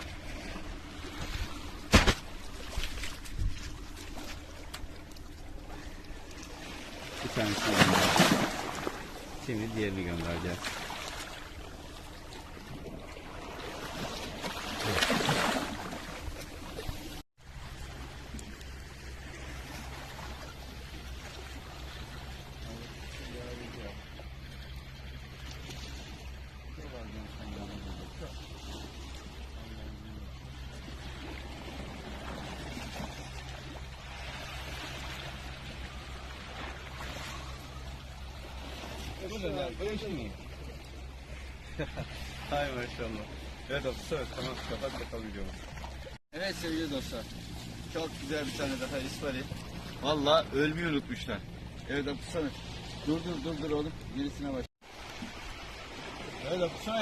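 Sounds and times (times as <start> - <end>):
sea waves washing against rocks: 0.0 - 22.1, 52.0 - 57.0.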